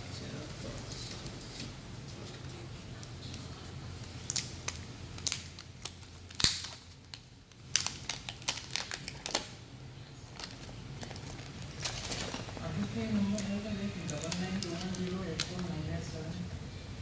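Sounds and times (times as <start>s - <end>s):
crinkling and clicks of handling: 2.3s - 9.6s, 10.2s - 15.7s
steady low hum: 9.5s - 17.0s.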